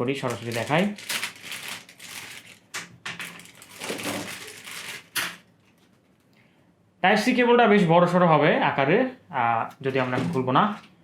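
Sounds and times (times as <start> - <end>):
packaging rustling: 0.2 - 6.1.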